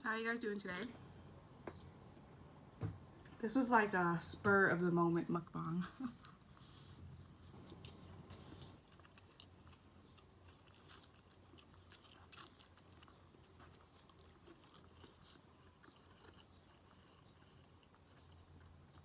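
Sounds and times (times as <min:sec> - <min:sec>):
close chewing of food: 0:06.0 - 0:19.0
sharp food crunches: 0:07.6 - 0:19.0.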